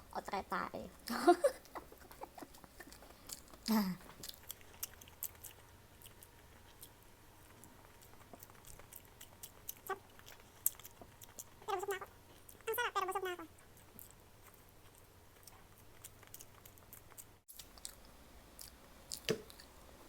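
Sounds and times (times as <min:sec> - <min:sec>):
person chewing food: 0:01.6 - 0:20.0.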